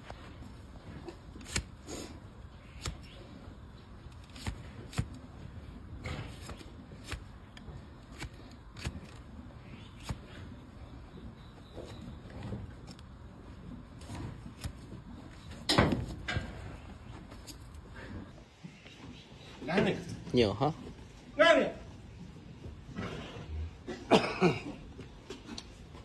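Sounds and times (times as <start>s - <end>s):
blade cutting and scraping hoof: 0.0s - 17.9s.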